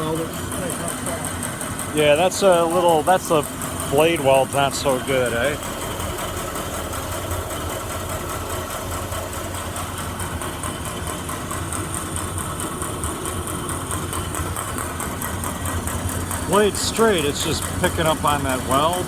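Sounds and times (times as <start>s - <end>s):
bandsaw running: 0.0s - 6.6s, 15.2s - 19.0s.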